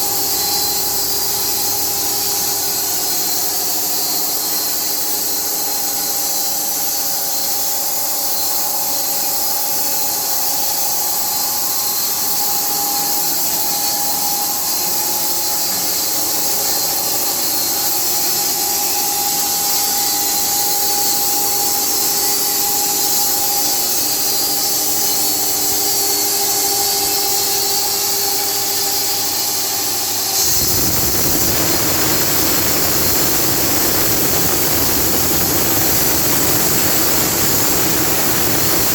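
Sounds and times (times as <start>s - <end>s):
band saw cutting log: 26.0s - 38.9s
loud low noise: 30.4s - 38.9s.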